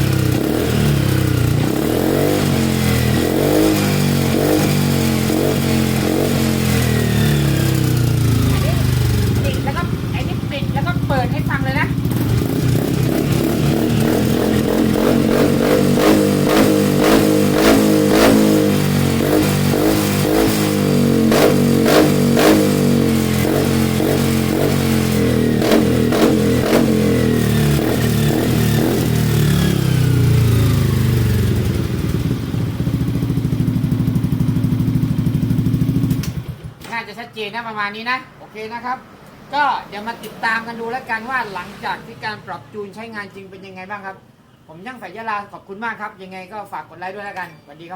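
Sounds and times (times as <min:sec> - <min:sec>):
scooter engine idling and revving: 0:00.0 - 0:36.9.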